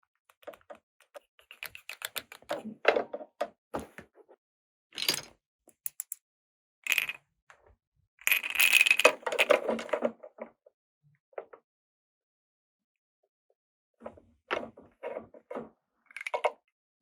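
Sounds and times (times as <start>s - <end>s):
plastic toy pieces clicking and rattling: 0.4s - 2.6s, 5.0s - 6.2s, 6.9s - 7.2s, 8.3s - 10.0s.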